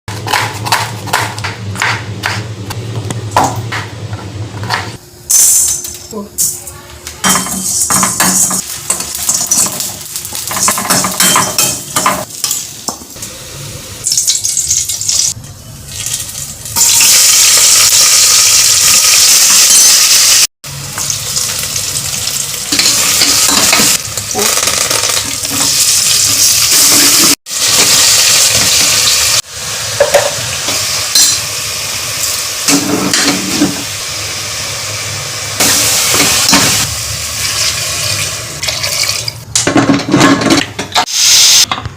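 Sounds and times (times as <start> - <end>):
food sizzling in a pan: 7.5 - 39.4.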